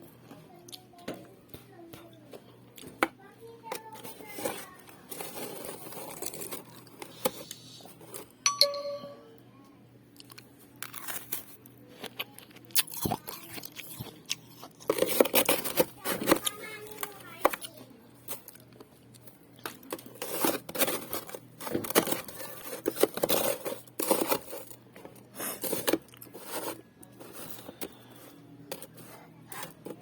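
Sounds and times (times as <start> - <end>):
ice crunching between teeth: 5.1 - 7.2, 10.2 - 17.7
short high-pitched tone: 8.5 - 9.4.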